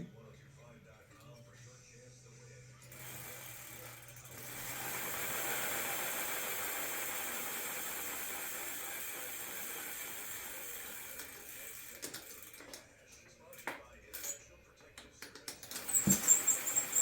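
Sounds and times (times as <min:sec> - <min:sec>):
bike chain and wheel whirring: 0:02.8 - 0:12.6, 0:15.8 - 0:17.0.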